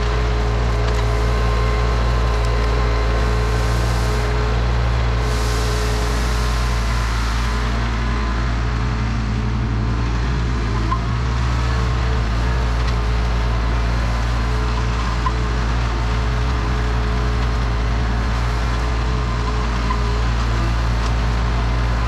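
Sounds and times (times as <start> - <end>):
tractor engine running: 0.0 - 22.0.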